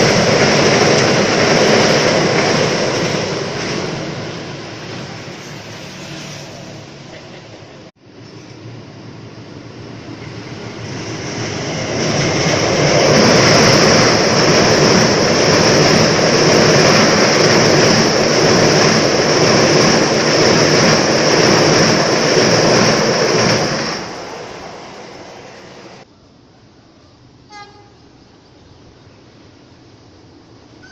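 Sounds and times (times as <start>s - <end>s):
train wheels on rails: 0.0s - 26.1s.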